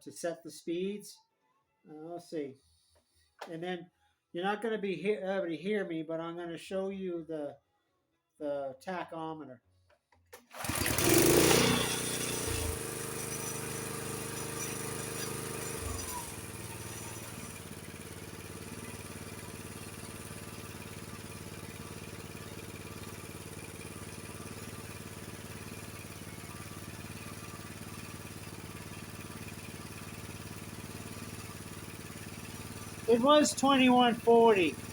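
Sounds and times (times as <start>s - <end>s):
snowblower engine starting and idling: 10.4s - 34.9s.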